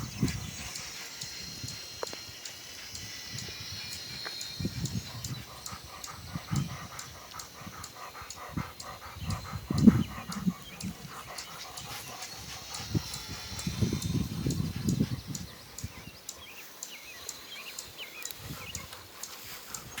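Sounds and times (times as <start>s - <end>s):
dog panting hard: 4.6s - 16.6s, 18.4s - 20.0s.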